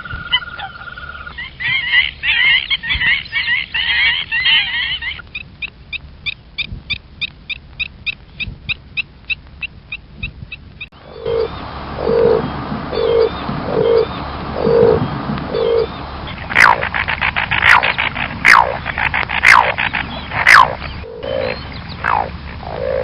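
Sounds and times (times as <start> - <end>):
low hooting notes: 11.0 - 23.0.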